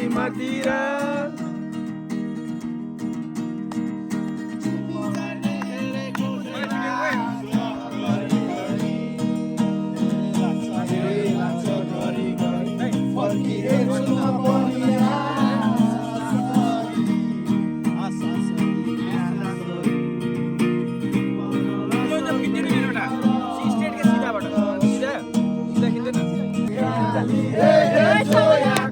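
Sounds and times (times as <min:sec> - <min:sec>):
acoustic guitar strumming: 0:00.0 - 0:28.9
person singing: 0:10.4 - 0:17.1, 0:26.7 - 0:28.9.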